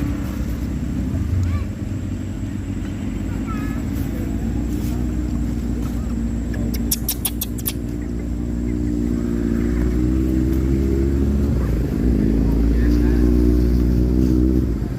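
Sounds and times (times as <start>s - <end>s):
vehicle engine running: 0.0s - 14.9s
sharp clicks: 6.5s - 8.0s.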